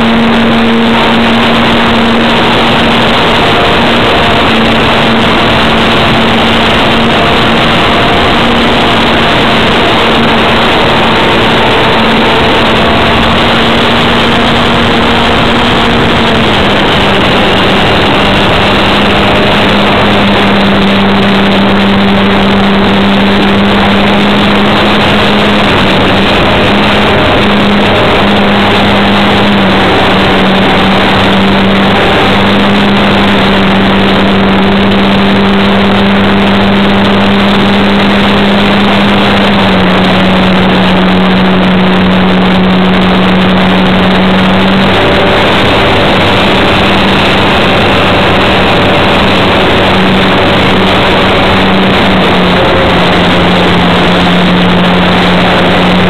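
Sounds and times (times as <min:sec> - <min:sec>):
heavy rushing noise: 0:00.0 - 0:56.0
model airplane motor drone: 0:00.0 - 0:56.0.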